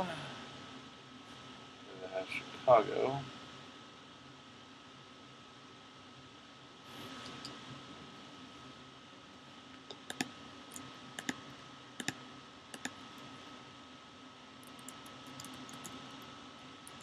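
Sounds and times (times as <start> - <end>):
mouse clicks: 9.8 - 11.4, 12.0 - 13.0.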